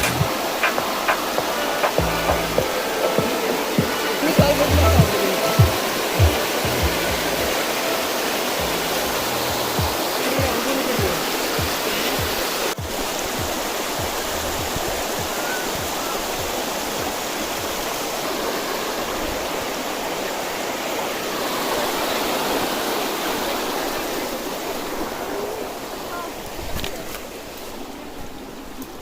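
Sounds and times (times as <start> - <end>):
background music with low beat: 0.0 - 7.6, 8.6 - 17.1
rushing water: 0.0 - 29.0.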